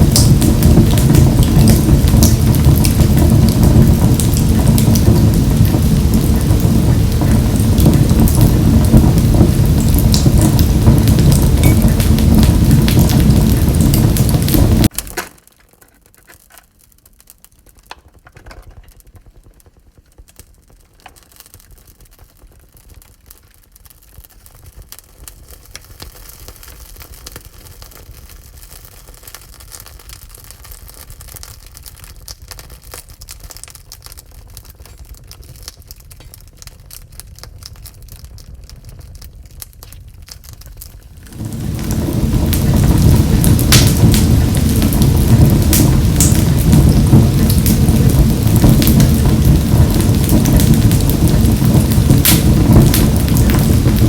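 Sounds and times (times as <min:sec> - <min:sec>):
loud rumbling rush: 0:00.0 - 0:14.9, 0:41.1 - 0:54.0
wood fire crackling in a stove: 0:00.0 - 0:54.0.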